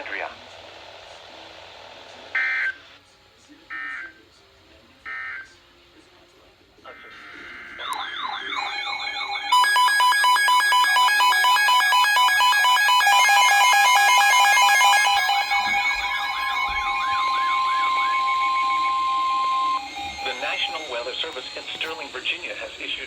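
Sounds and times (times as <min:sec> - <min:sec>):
steady attention tones: 0:06.9 - 0:23.0
warbling siren-like alarm: 0:07.1 - 0:22.8
chirping data bursts: 0:08.0 - 0:23.0.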